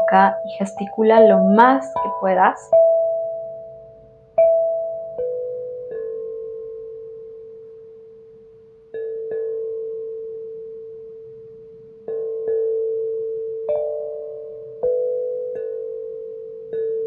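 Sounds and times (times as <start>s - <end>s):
struck bell tones ringing: 0.0s - 6.8s.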